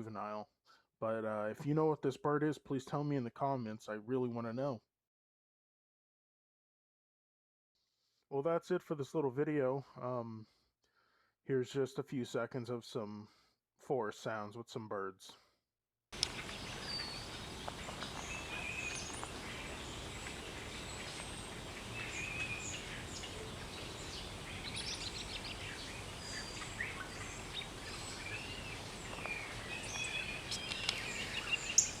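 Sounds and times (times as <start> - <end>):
birds chirping and whistling: 16.2 - 32.0
steady background hiss: 16.2 - 32.0.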